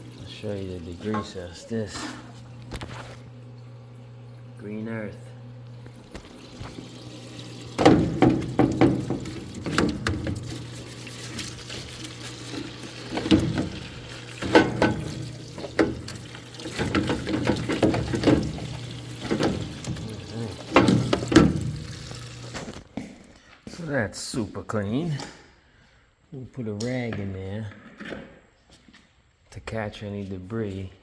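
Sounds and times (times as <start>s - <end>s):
liquid splashing in parts washer: 0.0s - 22.8s.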